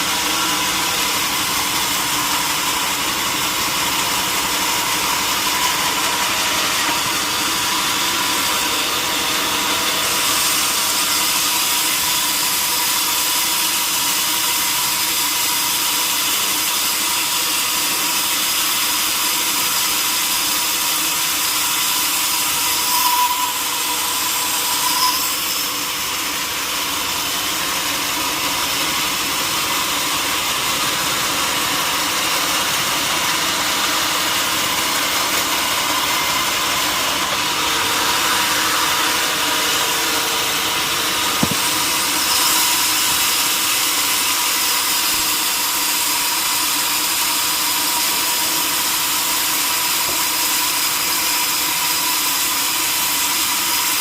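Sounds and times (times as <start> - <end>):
power saw running: 0.0 - 54.0
high squeals: 22.4 - 25.9.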